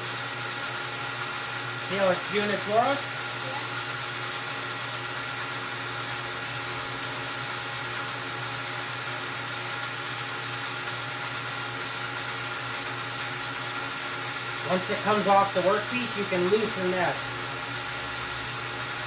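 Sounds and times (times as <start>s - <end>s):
metal lathe running: 0.0s - 19.0s.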